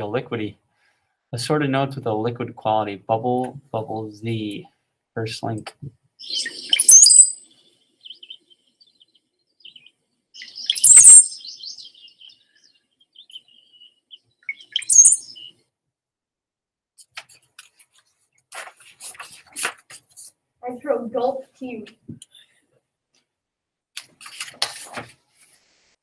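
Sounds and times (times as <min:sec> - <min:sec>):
cowbird song: 0:06.2 - 0:15.6.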